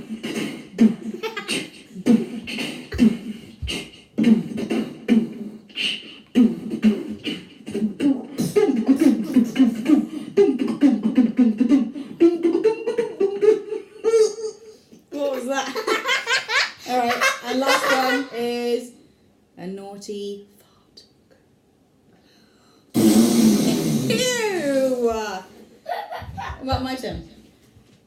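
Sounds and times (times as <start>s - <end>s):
woman beatboxing: 0.0s - 12.9s, 23.0s - 25.5s, 26.3s - 27.3s.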